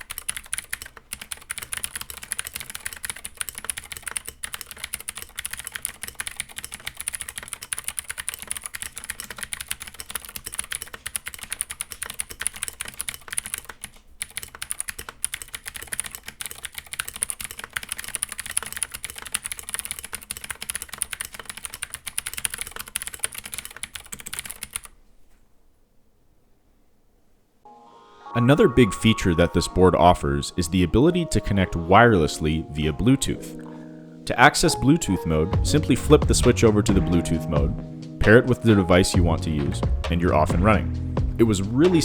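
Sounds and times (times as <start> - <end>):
fast mechanical keyboard typing: 0.0 - 25.0.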